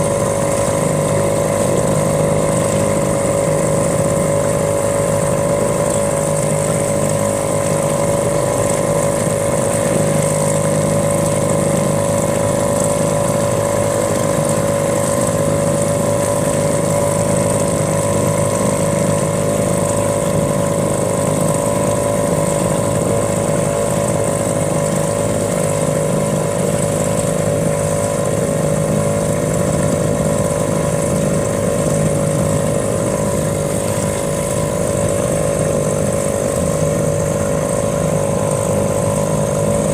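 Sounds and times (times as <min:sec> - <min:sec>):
outboard motor running: 0:00.0 - 0:39.9.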